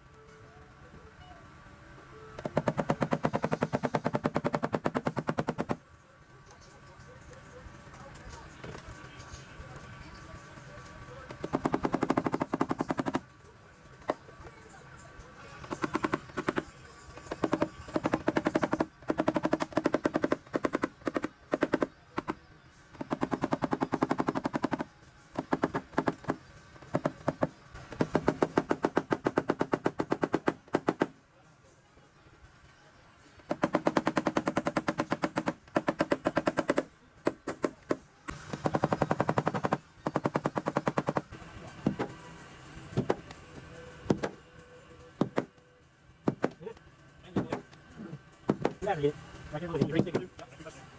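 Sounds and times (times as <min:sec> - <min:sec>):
rapid tapping on sheet metal: 0:02.4 - 0:05.8, 0:11.3 - 0:13.2, 0:17.3 - 0:31.1, 0:33.5 - 0:42.1.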